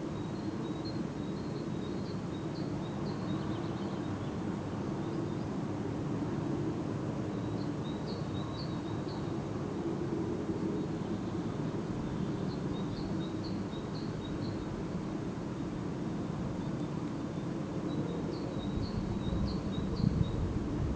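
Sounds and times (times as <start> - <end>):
songbirds chirping: 0.0 - 5.6, 10.8 - 14.9.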